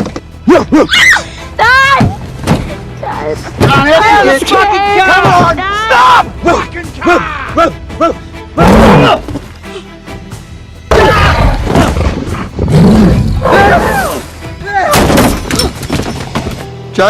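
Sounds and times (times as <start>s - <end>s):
film music: 0.0s - 17.0s
people screaming and yelling: 10.9s - 12.0s, 13.4s - 15.0s.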